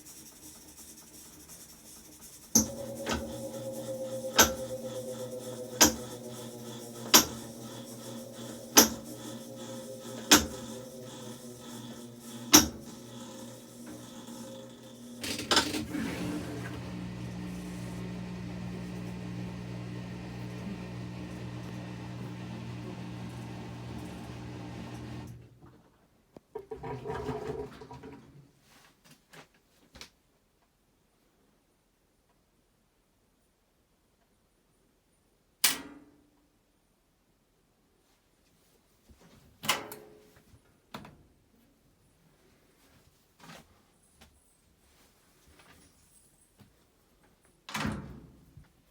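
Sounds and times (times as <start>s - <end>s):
washing machine winding down: 0.0s - 25.5s
steady low hum: 2.6s - 15.2s.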